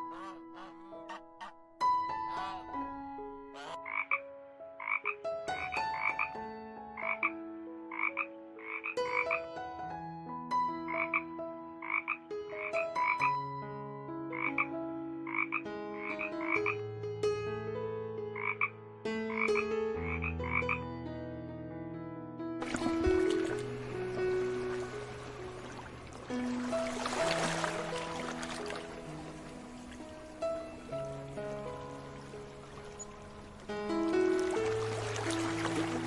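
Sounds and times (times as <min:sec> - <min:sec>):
frog croaking: 0:00.0 - 0:01.6, 0:03.5 - 0:04.2, 0:04.8 - 0:06.3, 0:07.0 - 0:07.3, 0:07.9 - 0:09.3, 0:10.9 - 0:11.2, 0:11.8 - 0:13.3, 0:14.3 - 0:14.7, 0:15.3 - 0:16.8, 0:18.4 - 0:18.7, 0:19.3 - 0:20.8.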